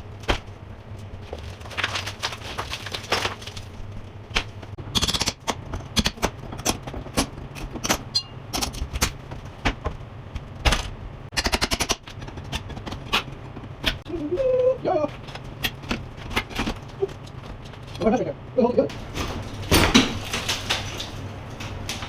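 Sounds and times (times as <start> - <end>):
wall demolition knocks and cracks: 1.2 - 4.7, 18.9 - 22.0.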